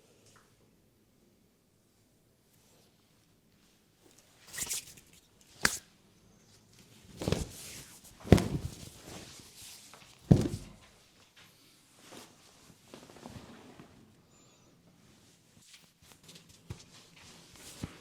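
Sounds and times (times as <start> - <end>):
hands slapping skin: 4.5 - 5.9.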